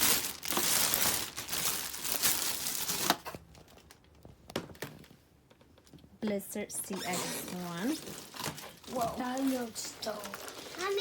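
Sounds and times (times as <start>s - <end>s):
packaging crinkling: 0.0s - 5.1s, 7.5s - 11.0s.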